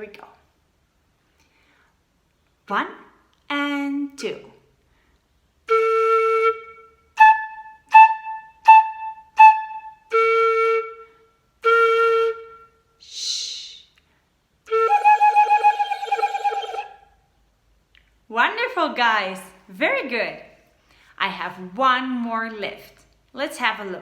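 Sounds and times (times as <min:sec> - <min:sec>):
breathy hiss: 0:13.0 - 0:14.3
flute head joint notes: 0:14.7 - 0:17.0.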